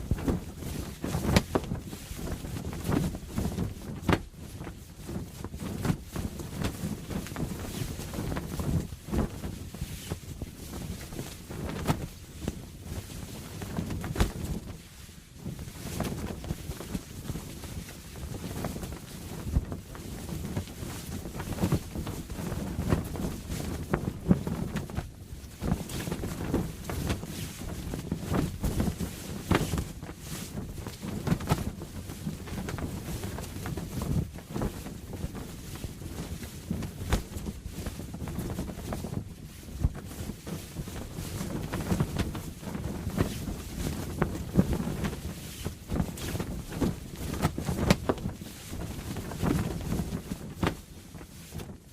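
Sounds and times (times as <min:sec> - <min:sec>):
rushing wind: 0:00.0 - 0:51.9
sail flapping and snapping: 0:00.0 - 0:51.9.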